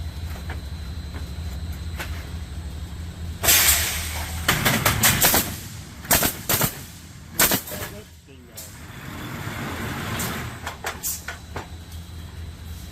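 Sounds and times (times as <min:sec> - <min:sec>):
machine low hum: 0:00.0 - 0:12.9
hissing air blast: 0:03.4 - 0:04.4
nail guns firing bangs: 0:03.4 - 0:07.9.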